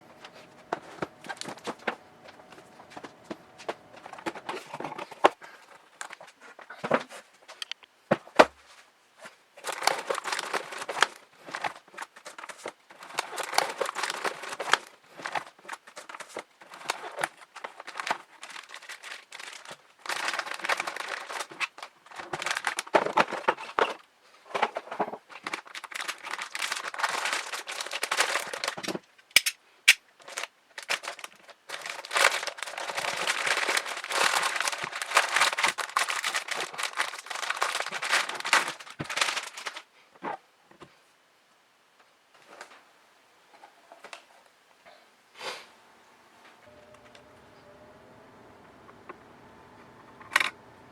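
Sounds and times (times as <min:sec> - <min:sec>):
plastic wrap and cardboard crinkling: 0:00.0 - 0:07.6, 0:08.2 - 0:29.6, 0:30.2 - 0:40.4.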